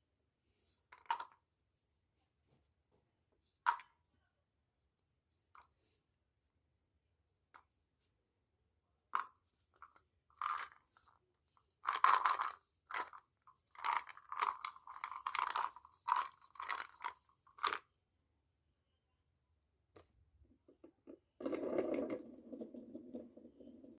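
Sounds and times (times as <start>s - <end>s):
seed rattle shaking: 11.8s - 17.8s.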